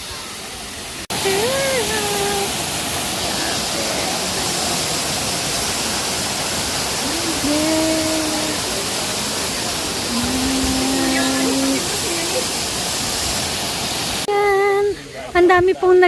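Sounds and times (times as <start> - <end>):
waterfall roaring: 0.0 - 15.4
faint voices calling out: 6.9 - 12.6.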